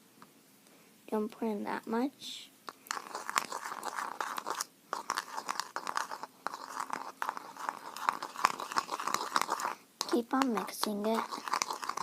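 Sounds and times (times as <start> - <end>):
slime stirred in a bowl: 2.7 - 12.0.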